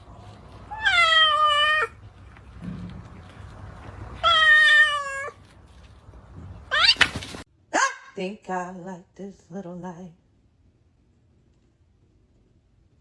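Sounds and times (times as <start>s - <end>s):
cat meowing: 0.7s - 2.0s, 4.2s - 5.4s, 6.7s - 7.2s.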